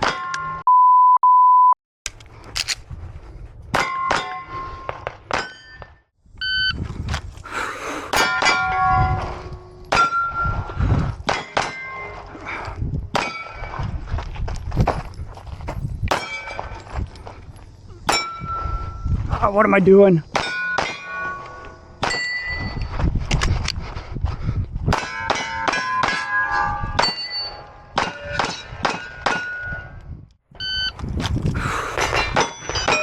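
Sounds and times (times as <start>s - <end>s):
steel targets clanging: 16.1s - 16.9s, 18.0s - 19.1s, 20.3s - 22.7s, 25.0s - 29.9s, 32.0s - 33.0s
shot timer beep: 30.6s - 30.9s.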